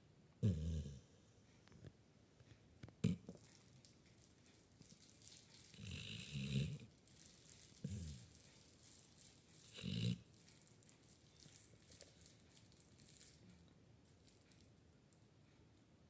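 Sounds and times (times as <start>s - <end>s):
puppy snoring: 0.4s - 1.2s, 3.0s - 3.4s, 5.7s - 6.9s, 7.8s - 8.3s, 9.6s - 10.3s.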